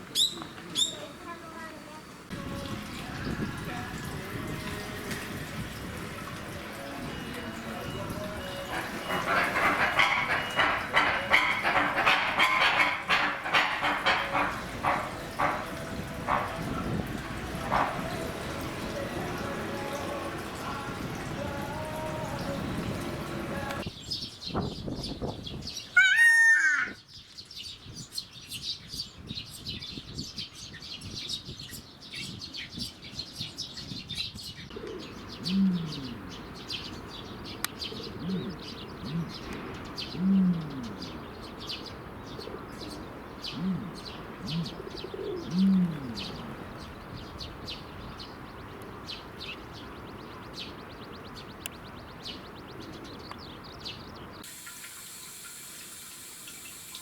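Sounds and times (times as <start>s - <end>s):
small birds chirping: 0.0s - 4.0s, 23.6s - 57.0s
short low falling bird calls: 25.9s - 27.0s, 34.9s - 54.4s
loud gliding bird call: 26.0s - 27.0s.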